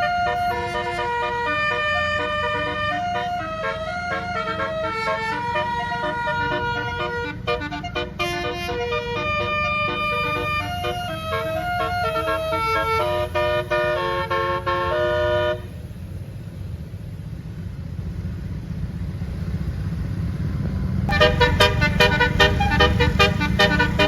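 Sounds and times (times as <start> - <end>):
musical bus horn melody: 0.0 - 15.9, 21.1 - 24.0
engine and road noise: 0.0 - 24.0.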